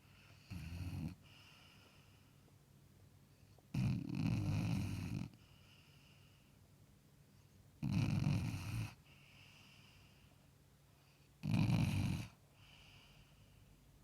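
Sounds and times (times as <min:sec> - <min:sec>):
dog snoring: 0:00.2 - 0:01.8, 0:03.7 - 0:06.2, 0:07.8 - 0:10.0, 0:11.4 - 0:13.5.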